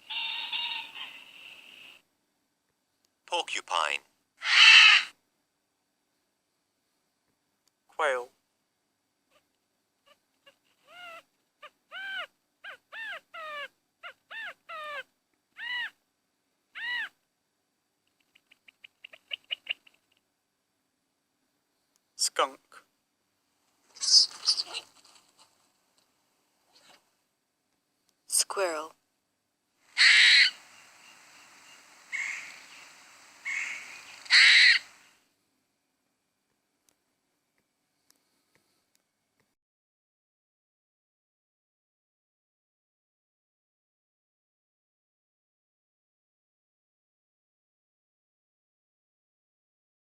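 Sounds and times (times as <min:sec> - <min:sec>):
quail calling: 0:00.0 - 0:02.0, 0:04.4 - 0:05.1, 0:10.1 - 0:16.0, 0:16.8 - 0:17.2, 0:18.2 - 0:20.2, 0:23.9 - 0:25.2, 0:29.9 - 0:35.1.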